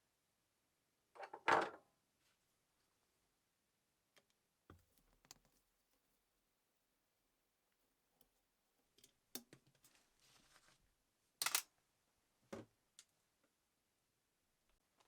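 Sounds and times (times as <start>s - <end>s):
soft scrape: 9.9s - 10.8s
small hard objects clicking: 11.4s - 11.6s.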